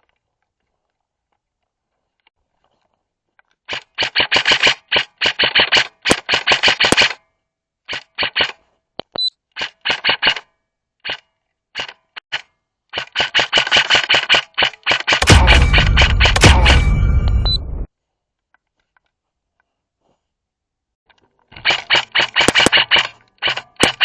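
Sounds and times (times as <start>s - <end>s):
airsoft rifle firing: 3.7s - 7.2s, 13.0s - 17.6s, 21.6s - 24.0s.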